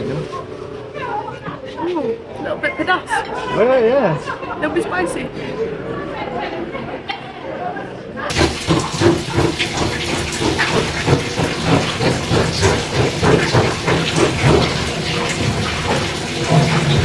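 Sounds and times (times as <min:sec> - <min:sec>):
tap water pouring into bathtub: 0:08.3 - 0:17.0.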